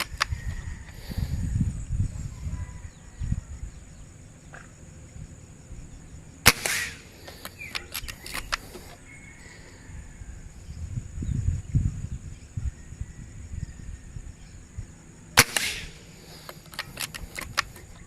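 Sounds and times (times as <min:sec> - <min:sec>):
air rifle shot: 0:06.4 - 0:08.9, 0:15.4 - 0:17.8.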